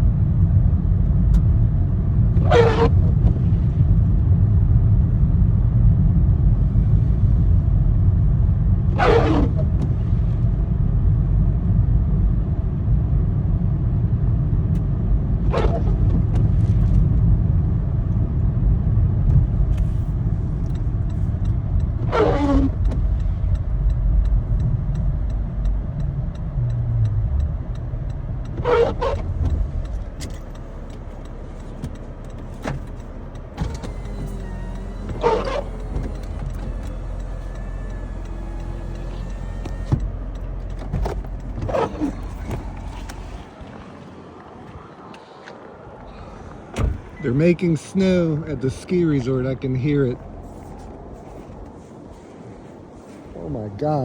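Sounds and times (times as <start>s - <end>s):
car engine and road noise: 0.0s - 54.0s.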